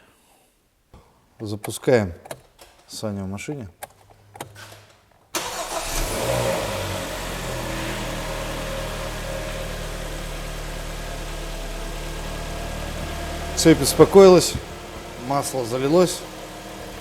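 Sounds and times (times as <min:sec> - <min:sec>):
car engine starting and idling: 0:04.3 - 0:17.0.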